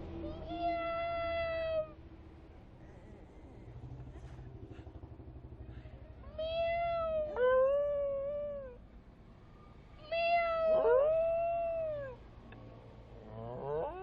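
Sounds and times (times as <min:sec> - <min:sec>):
dog howling: 0:06.4 - 0:08.8, 0:10.0 - 0:12.2, 0:13.2 - 0:14.0.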